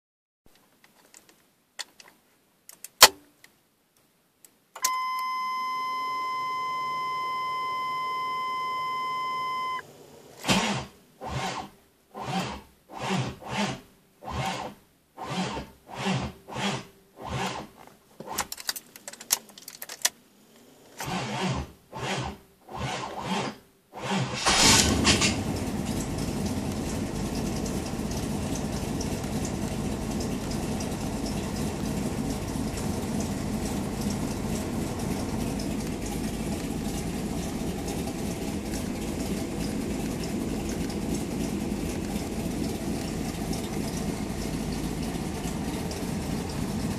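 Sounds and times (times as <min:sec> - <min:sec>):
electronic warning tone: 0:05.6 - 0:09.8
engine starter cranking: 0:10.4 - 0:20.0, 0:21.0 - 0:46.9.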